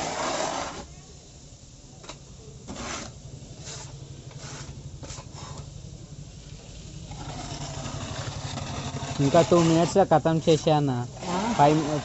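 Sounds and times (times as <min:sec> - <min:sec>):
putty blade scraping wall: 0:00.0 - 0:00.8, 0:07.1 - 0:10.1, 0:11.2 - 0:12.0.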